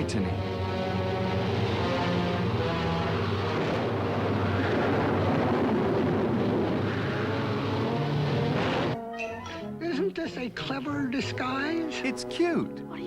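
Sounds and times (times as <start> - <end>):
loud rushing roar: 0.0 - 9.0
sustained low notes: 0.0 - 9.0.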